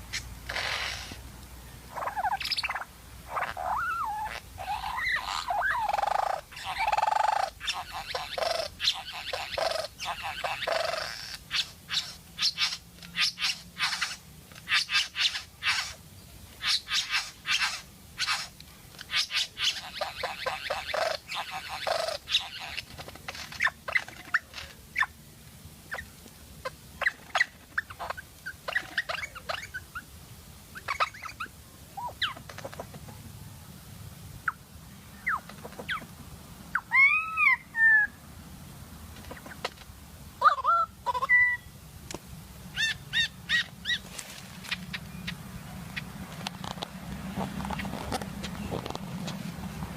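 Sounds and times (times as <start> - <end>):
bird calling harshly: 0.0 - 1.2, 1.9 - 16.0, 16.6 - 25.2, 25.9 - 30.1, 30.7 - 32.9, 36.7 - 38.2, 40.4 - 41.7, 42.7 - 46.1
bird chirps: 1.9 - 16.0.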